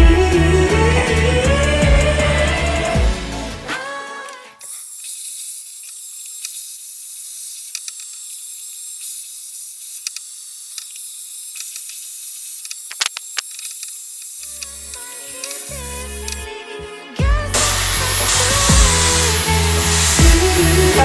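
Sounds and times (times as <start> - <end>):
small clicks: 4.3 - 15.7
hair dryer blowing: 17.2 - 21.0.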